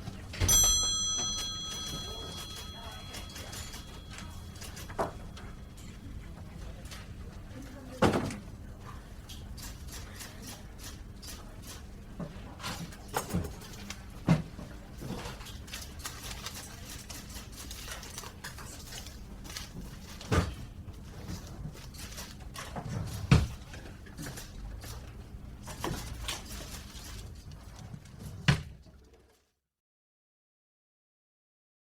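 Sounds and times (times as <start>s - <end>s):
low room hum: 0.0s - 29.1s
knocks and clatters from desk work: 0.4s - 6.0s, 12.2s - 16.3s, 17.8s - 26.7s.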